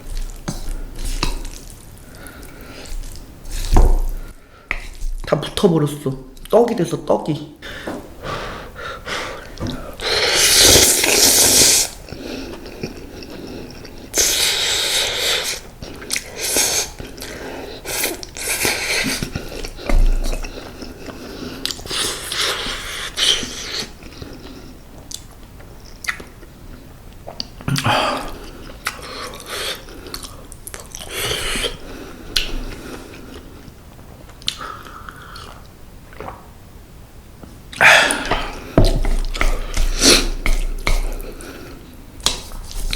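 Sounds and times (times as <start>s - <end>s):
person chewing noodles: 9.1s - 36.5s, 37.7s - 42.9s.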